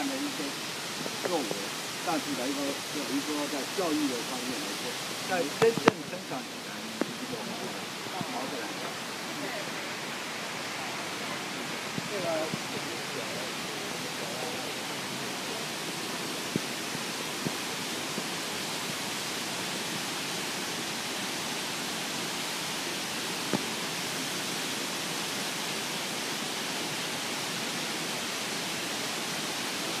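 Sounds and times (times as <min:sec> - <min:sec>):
mountain stream rushing: 0:00.0 - 0:30.0.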